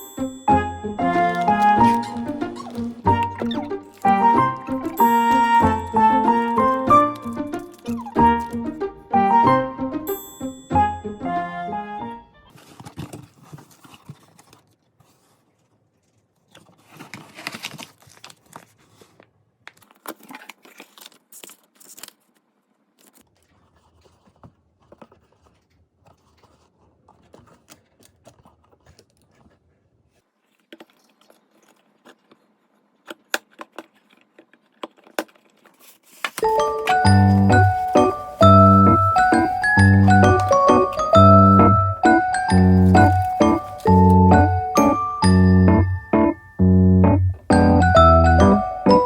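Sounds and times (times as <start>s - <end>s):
objects clicking and clinking: 0.0s - 8.6s
paper rustling and tearing: 1.0s - 8.8s, 12.5s - 44.3s.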